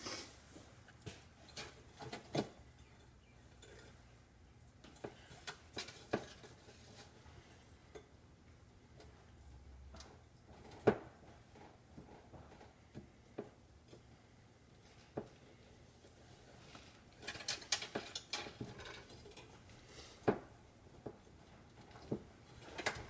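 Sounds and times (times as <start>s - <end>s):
metal tools clinking and knocking: 1.4s - 4.1s, 17.1s - 19.6s.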